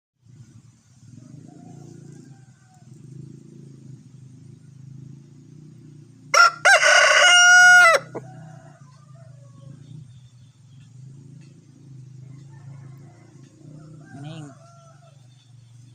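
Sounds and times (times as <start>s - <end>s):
distant roosters crowing: 0.3s - 15.9s
rooster crowing loudly: 6.3s - 9.5s, 12.5s - 15.2s.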